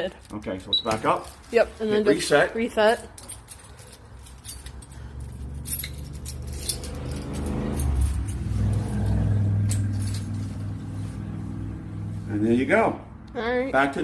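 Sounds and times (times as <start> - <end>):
keys jangling: 2.8 - 10.8.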